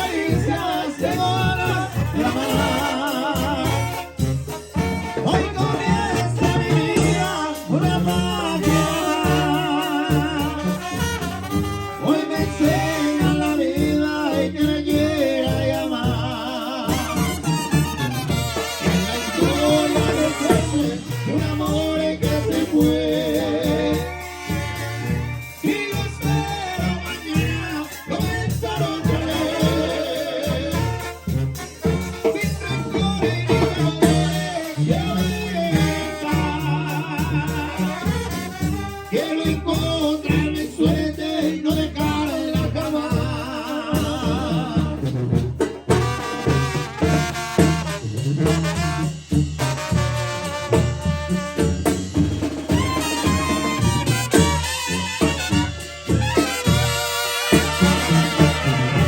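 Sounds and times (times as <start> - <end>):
person singing: 0.0 - 4.2, 5.1 - 10.9, 12.0 - 17.4, 19.0 - 24.7, 25.5 - 31.3, 32.1 - 38.4, 39.1 - 45.1
brass band playing live: 0.0 - 59.0
tuba bass line: 0.0 - 59.0.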